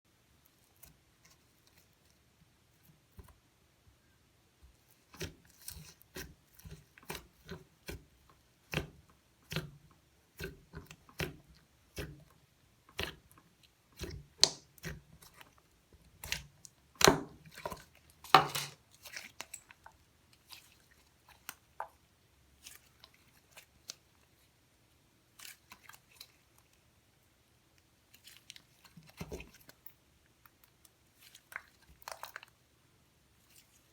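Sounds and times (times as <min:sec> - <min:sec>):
hands squishing slime: 0:04.8 - 0:12.3, 0:12.9 - 0:22.0, 0:30.7 - 0:32.6.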